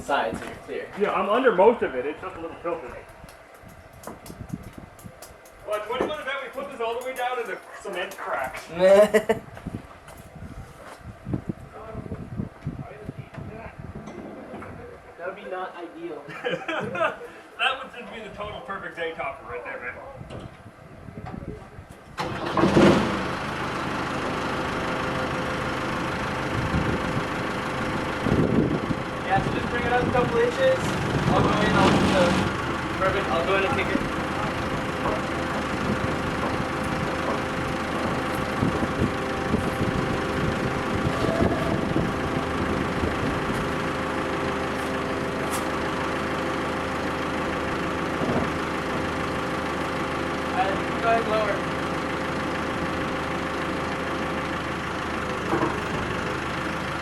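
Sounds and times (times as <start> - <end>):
forklift engine starting and idling: 1.0 - 9.0, 22.0 - 57.0.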